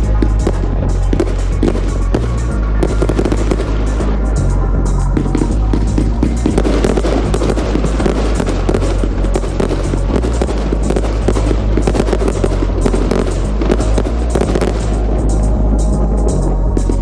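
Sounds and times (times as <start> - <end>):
music with steady bass line: 0.0 - 17.0
fireworks crackling and popping: 5.2 - 15.4.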